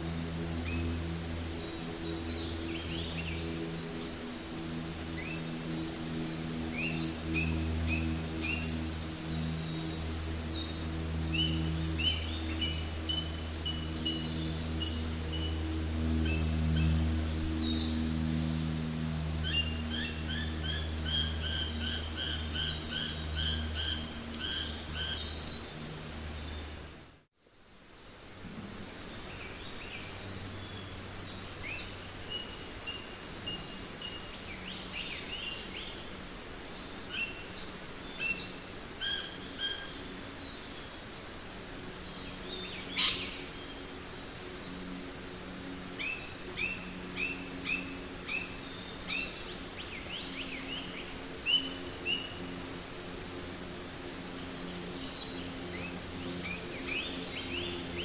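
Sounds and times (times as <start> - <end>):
birds calling and chirping: 0.0 - 27.1, 29.2 - 58.0
low steady hum: 0.0 - 58.0
faint steady hiss: 23.8 - 58.0.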